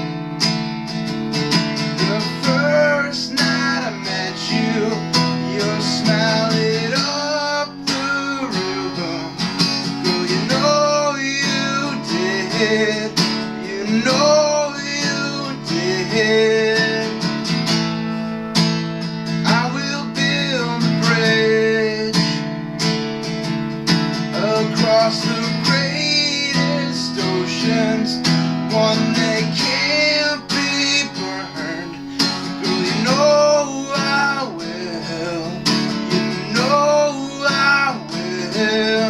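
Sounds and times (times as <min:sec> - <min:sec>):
acoustic guitar strumming: 0:00.0 - 0:39.0
person singing: 0:01.8 - 0:17.5, 0:19.2 - 0:22.6, 0:24.1 - 0:39.0.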